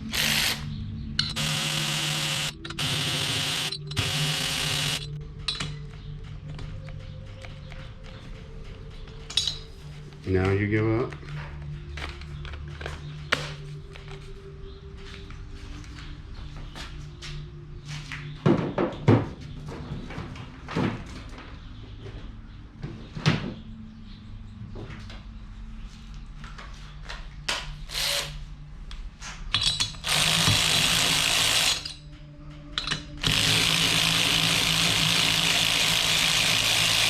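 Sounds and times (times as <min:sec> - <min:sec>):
power tool running: 0:00.0 - 0:05.1, 0:27.9 - 0:28.4, 0:30.0 - 0:31.9, 0:33.2 - 0:37.0
metal parts clicking and knocking: 0:29.5 - 0:34.9.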